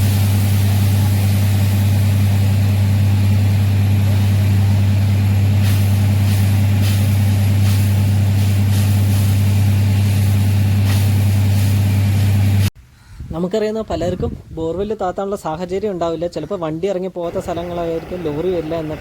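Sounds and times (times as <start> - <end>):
drilling rig engine drone: 0.0 - 12.7, 17.3 - 19.0.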